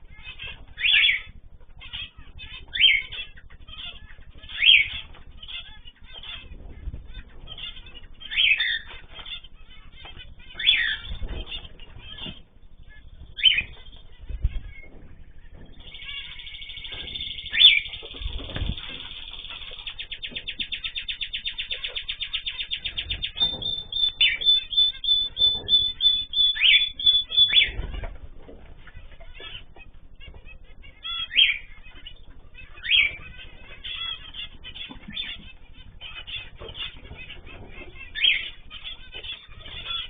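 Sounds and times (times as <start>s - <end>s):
birds chirping: 0.0s - 40.0s
rapid bird trill: 0.0s - 40.0s
wings fluttering: 0.0s - 40.0s
low thumps: 9.9s - 19.0s
sharp repeated high bird calls: 15.8s - 28.0s.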